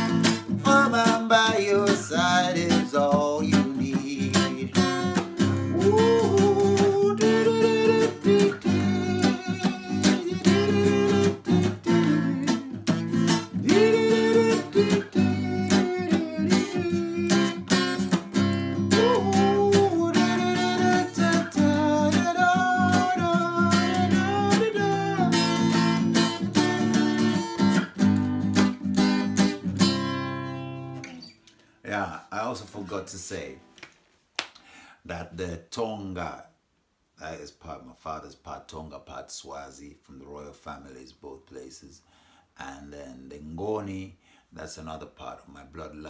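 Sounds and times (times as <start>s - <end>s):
guitar strumming: 0.0s - 31.4s
person singing without words: 0.2s - 26.4s.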